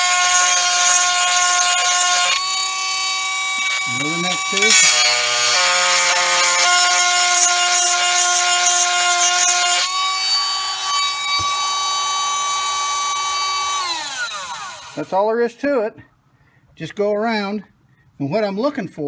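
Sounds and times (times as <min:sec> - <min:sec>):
grinding stone on chain: 0:00.0 - 0:11.6
sharpener motor whining: 0:00.0 - 0:15.1.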